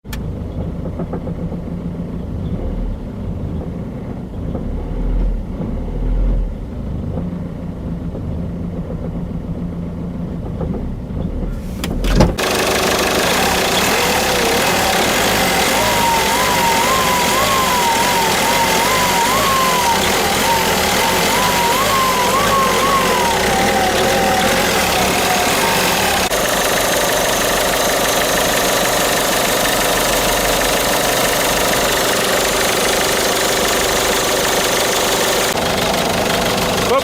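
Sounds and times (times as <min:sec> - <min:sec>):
engine clacking: 0:00.0 - 0:37.0
diesel engine idling: 0:11.5 - 0:37.0.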